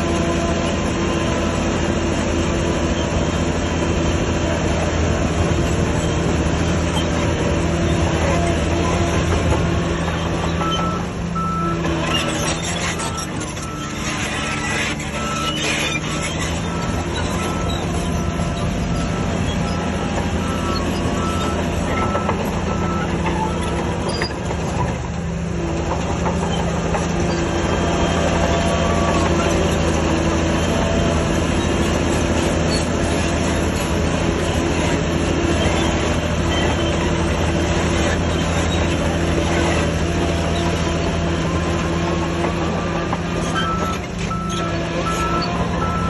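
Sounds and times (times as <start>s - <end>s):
heavy diesel machinery running: 0.0s - 46.0s
reversing alarm beeping: 10.5s - 23.8s, 43.5s - 46.0s.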